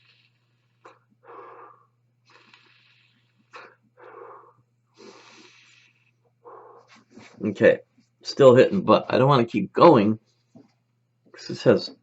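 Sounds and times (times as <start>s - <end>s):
breathy vape draws: 0.0s - 7.4s
person exhaling: 0.8s - 2.7s.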